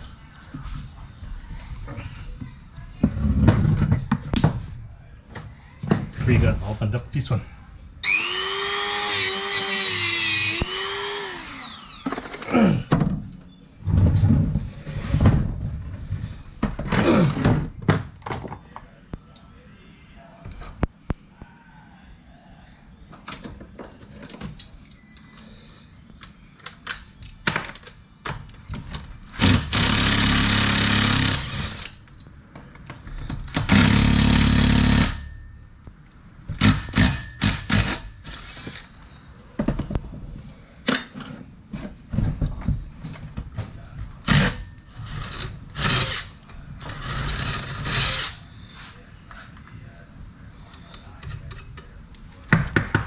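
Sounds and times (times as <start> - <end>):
handheld power tool running: 8.0 - 12.4, 29.4 - 31.9.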